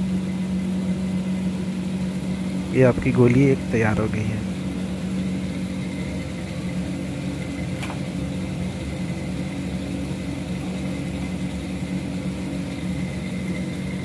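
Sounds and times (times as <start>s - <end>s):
low machine hum: 0.0s - 14.0s.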